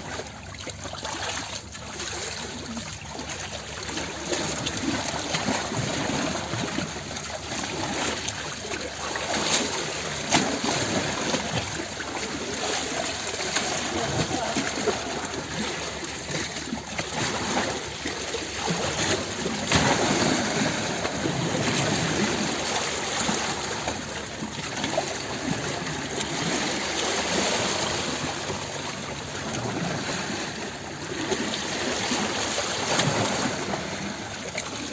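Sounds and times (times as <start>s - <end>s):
stream water splashing and rushing: 0.0s - 34.9s.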